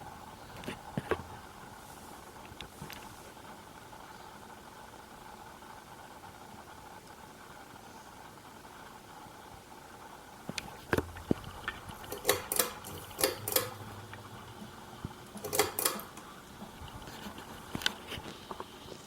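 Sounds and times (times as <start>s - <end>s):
ceiling fan humming: 0.0s - 19.0s
sharp clicks and rattles: 10.5s - 18.7s.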